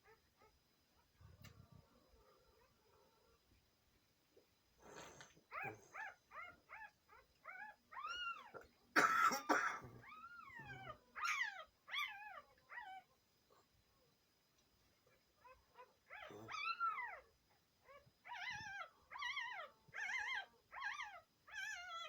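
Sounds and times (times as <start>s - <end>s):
breathy snort: 4.8s - 5.4s.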